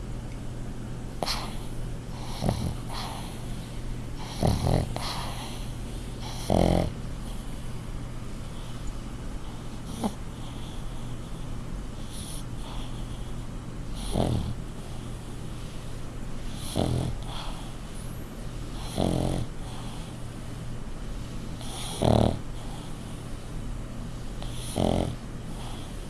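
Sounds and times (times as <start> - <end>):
steady low hum: 0.0 - 26.0
dog snoring: 1.2 - 3.6, 4.2 - 7.4, 9.5 - 11.4, 12.0 - 13.3, 13.9 - 15.2, 16.5 - 18.1, 18.7 - 20.2, 21.6 - 23.1, 24.4 - 26.0.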